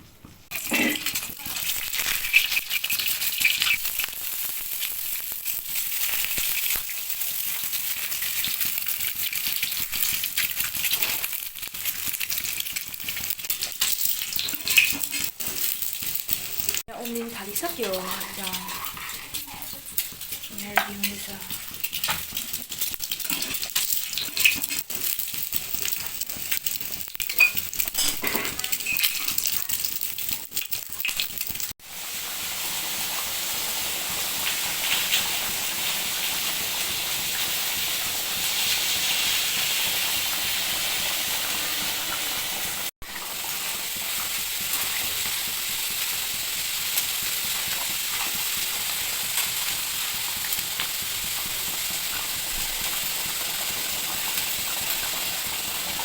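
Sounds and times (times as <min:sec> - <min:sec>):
curry bubbling in a pan: 0:00.2 - 0:56.0
sharp crackling ticks: 0:01.2 - 0:31.8.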